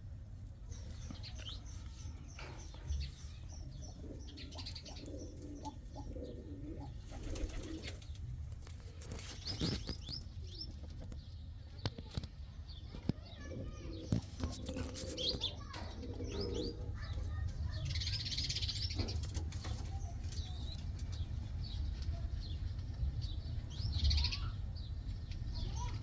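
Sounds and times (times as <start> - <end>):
pigeons cooing: 2.3 - 8.1, 13.4 - 21.2
wings flapping: 7.0 - 10.1.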